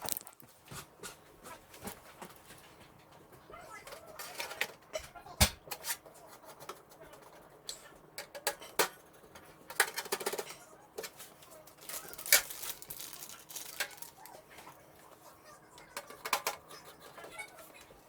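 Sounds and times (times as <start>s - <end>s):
computer parts clicking and rustling: 3.9s - 14.4s.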